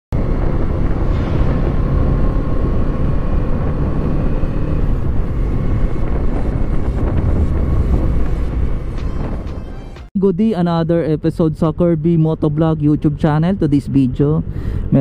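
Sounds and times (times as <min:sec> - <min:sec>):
road noise: 0:00.1 - 0:15.0
motorcycle engine running: 0:00.2 - 0:09.7
wind noise on microphone: 0:00.2 - 0:10.0.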